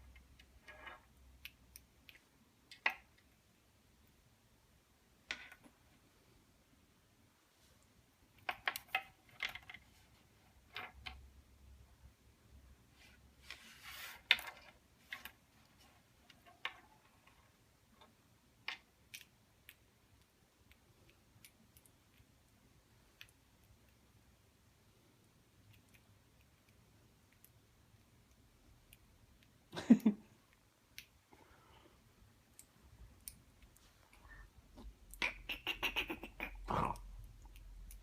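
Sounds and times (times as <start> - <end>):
faint small clicks and taps: 0.0 - 3.4.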